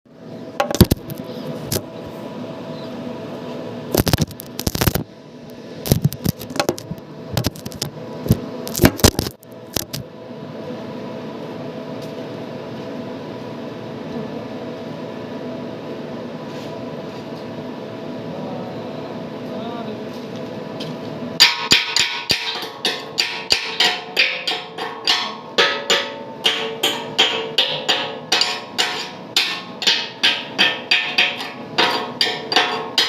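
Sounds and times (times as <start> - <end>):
steady machine hum: 0.1 - 33.0
metallic knocks and scrapes: 21.4 - 33.0.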